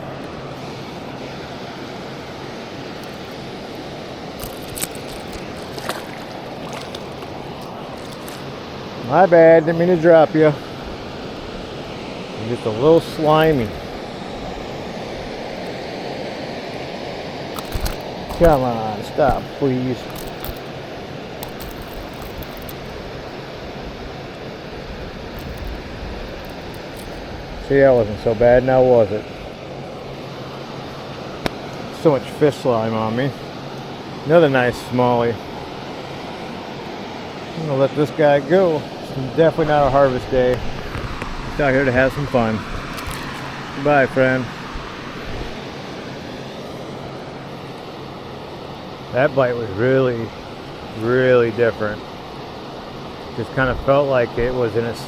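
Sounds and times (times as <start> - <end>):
sharp clicks: 17.6 - 20.7, 21.4 - 22.9, 25.4 - 27.2.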